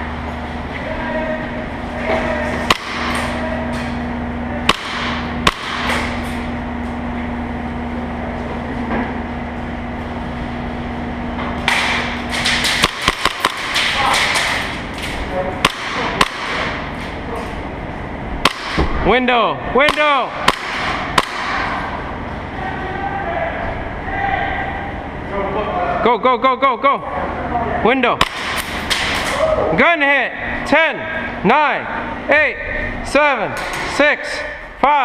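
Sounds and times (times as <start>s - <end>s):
steady hum: 0.0s - 35.0s
airsoft guns firing: 4.7s - 6.1s, 11.8s - 14.8s, 15.6s - 16.8s, 18.4s - 18.8s, 19.8s - 21.7s, 28.2s - 29.3s.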